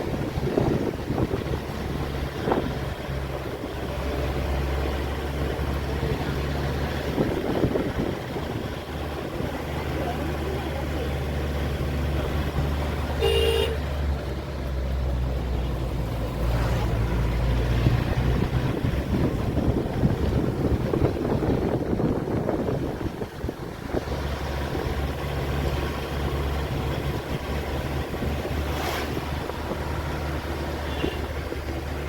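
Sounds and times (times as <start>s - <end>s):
road noise: 0.0s - 32.0s
vehicle engine running: 0.0s - 32.0s
short horn toot: 13.2s - 13.8s, 30.8s - 31.3s.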